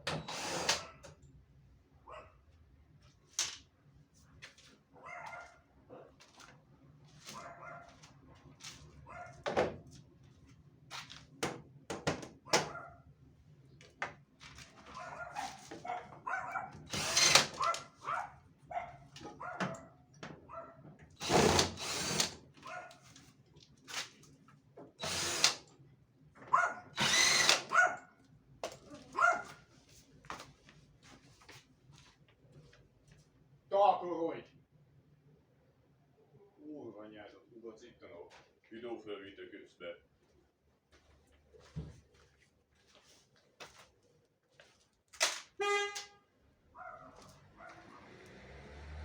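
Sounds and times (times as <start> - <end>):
dog barking: 2.0 - 2.4, 5.0 - 6.2, 7.3 - 8.0, 9.0 - 9.4, 12.4 - 13.1, 14.9 - 16.9, 17.6 - 20.8, 22.6 - 23.0, 26.5 - 27.0, 27.7 - 28.2, 28.9 - 29.7, 46.7 - 48.2.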